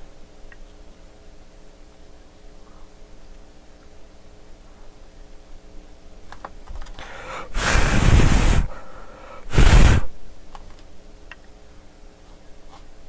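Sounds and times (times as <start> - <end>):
breath puffs on microphone: 7.0 - 10.1.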